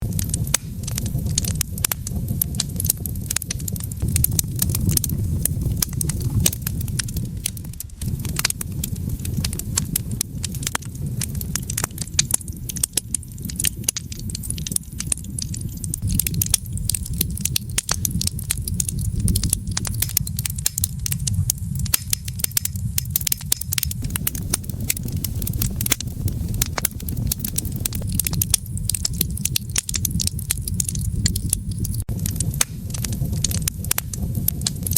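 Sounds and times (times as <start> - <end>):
campfire crackling and popping: 0.0 - 34.9
low fire rumble: 0.0 - 34.9.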